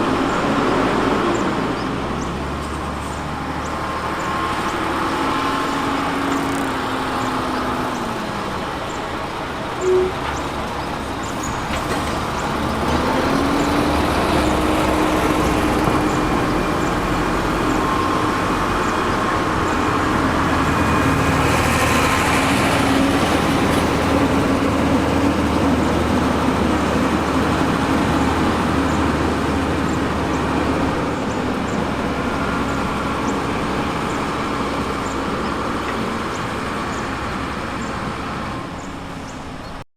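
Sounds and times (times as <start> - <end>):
heavy machinery diesel engine: 0.0 - 39.8
loud beep: 9.8 - 10.3.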